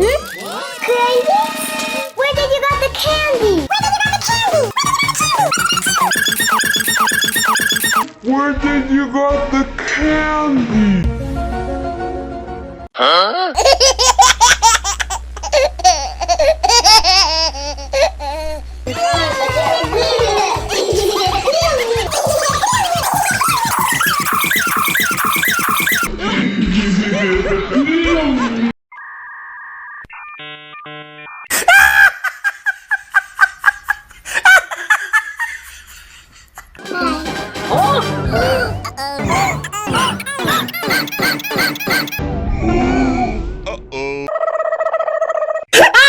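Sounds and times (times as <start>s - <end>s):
high-pitched voice laughing: 3.7s - 8.0s, 20.6s - 26.1s, 39.0s - 42.2s
electronic beeping tones: 4.8s - 8.1s, 22.1s - 26.1s, 39.2s - 42.2s.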